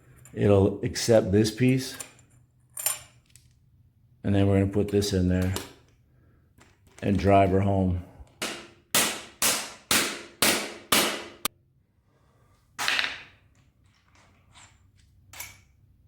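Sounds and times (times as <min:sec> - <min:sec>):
hammer striking metal tool: 0:08.4 - 0:11.5.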